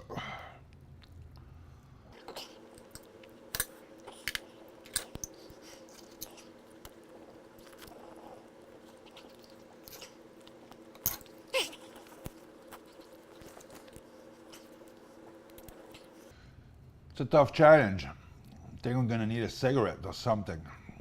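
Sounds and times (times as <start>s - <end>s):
steady hum: 0.0s - 21.0s
chewing steak: 2.1s - 16.3s.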